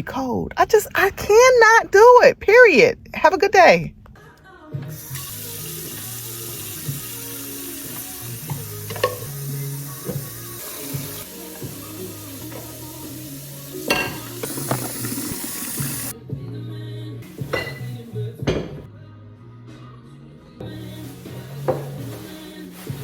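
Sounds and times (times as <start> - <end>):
tap water running into sink: 5.0 - 16.1.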